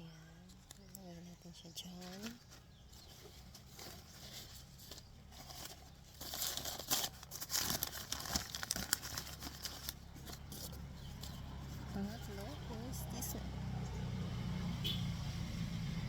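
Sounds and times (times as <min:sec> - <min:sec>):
packaging crinkling and rustling: 0:01.8 - 0:12.0.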